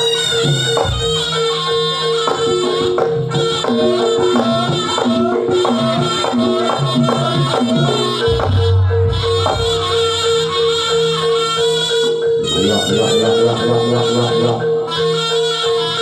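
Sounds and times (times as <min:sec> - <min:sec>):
drum strokes: 0:00.0 - 0:11.8
percussion ensemble playing: 0:00.0 - 0:16.0.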